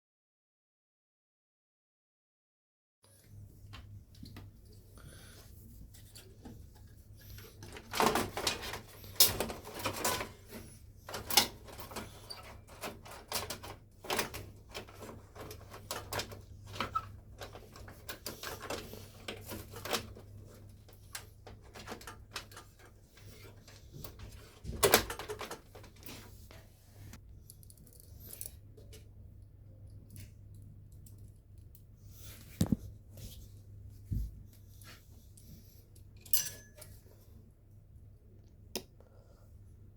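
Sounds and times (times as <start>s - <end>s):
computer hardware clicks and rattles: 7.3s - 26.1s.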